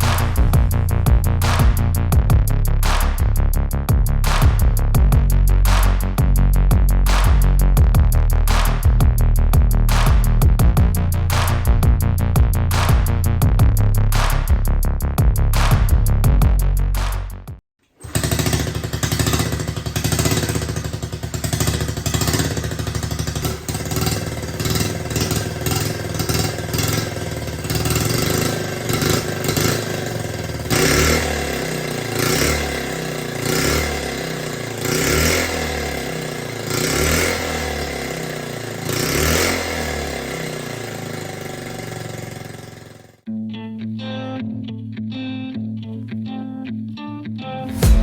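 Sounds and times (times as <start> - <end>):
small motorcycle engine running: 0.0 - 2.0, 18.0 - 43.2
engine throttle revs: 0.0 - 6.2, 11.2 - 13.4, 18.0 - 43.2, 47.7 - 48.0.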